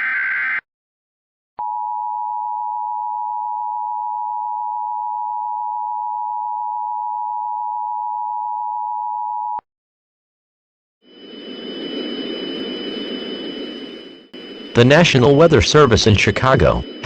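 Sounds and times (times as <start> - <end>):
steady two-tone alarm: 11.0 - 17.0.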